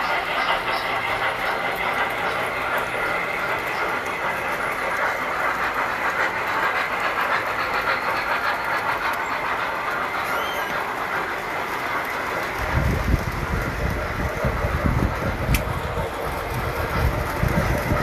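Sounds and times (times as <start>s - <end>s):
model trains clattering on track: 0.0s - 18.0s.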